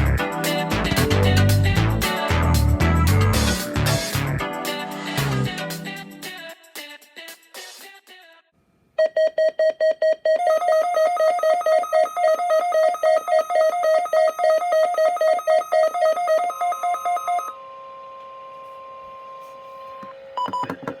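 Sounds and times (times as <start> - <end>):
rapid electronic beeps: 9.0 - 17.5.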